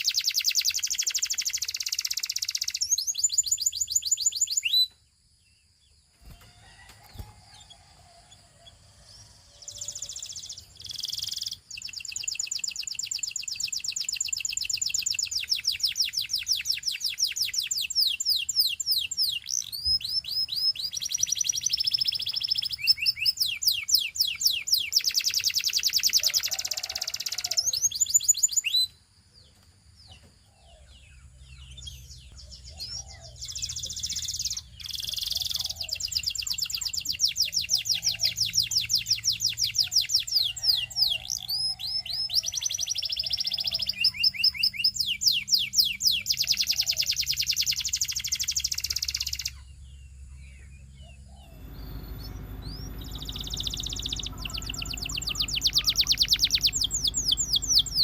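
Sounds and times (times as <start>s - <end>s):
canary singing trills: 0.0s - 5.0s, 6.2s - 58.0s.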